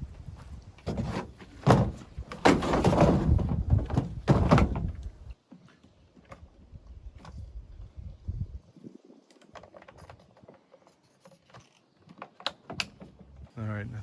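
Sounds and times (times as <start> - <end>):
knocks and thumps: 0.8 - 5.1.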